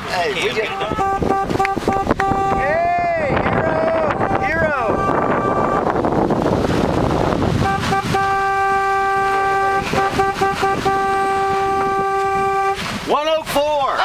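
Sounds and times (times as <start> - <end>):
vehicle horn blast: 0.4 - 2.8, 3.8 - 6.1, 7.2 - 12.9
wind-like rushing noise: 1.2 - 8.2.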